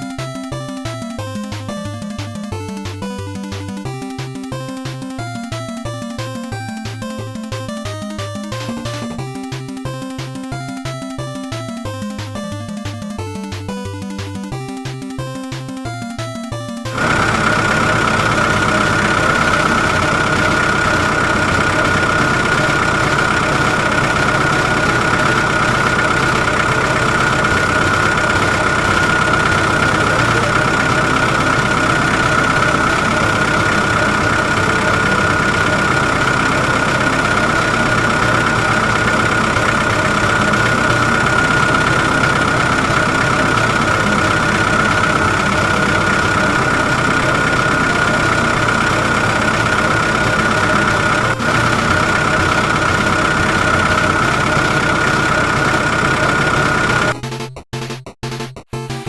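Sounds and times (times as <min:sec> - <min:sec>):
electric motor whine: 0:17.0 - 0:57.2.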